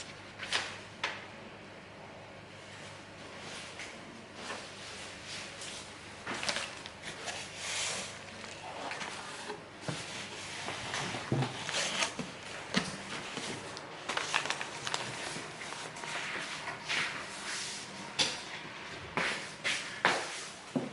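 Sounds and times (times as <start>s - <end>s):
packaging rustling: 11.6s - 16.2s.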